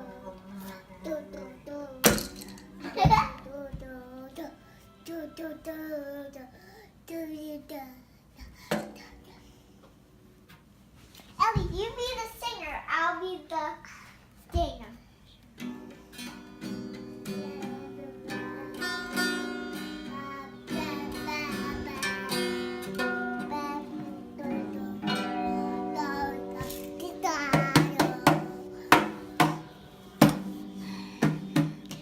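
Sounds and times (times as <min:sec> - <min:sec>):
child singing: 0:00.0 - 0:08.1, 0:16.9 - 0:30.8
guitar strumming and plucking: 0:15.6 - 0:32.0.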